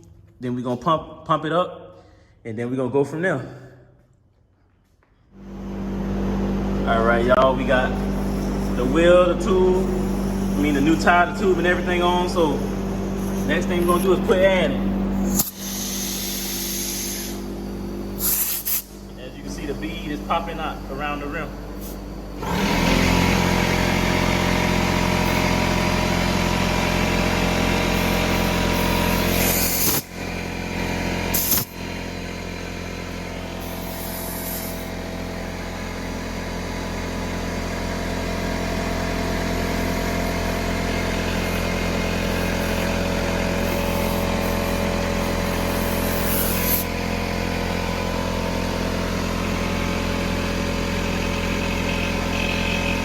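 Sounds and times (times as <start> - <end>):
air compressor running: 3.3 - 53.0
short air hisses: 15.2 - 17.4, 18.2 - 19.0, 27.9 - 30.1, 31.3 - 31.8, 33.6 - 34.9, 43.6 - 47.0.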